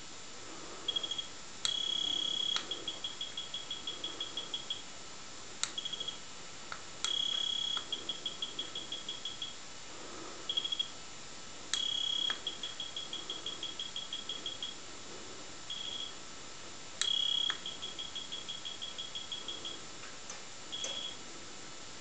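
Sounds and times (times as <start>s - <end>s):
electronic buzzer beeping: 0.9s - 4.9s, 5.8s - 6.2s, 7.0s - 9.6s, 10.5s - 10.9s, 11.8s - 14.8s, 15.7s - 16.2s, 17.0s - 19.8s, 20.7s - 21.2s
sharp click: 1.0s - 3.1s, 5.6s - 8.0s.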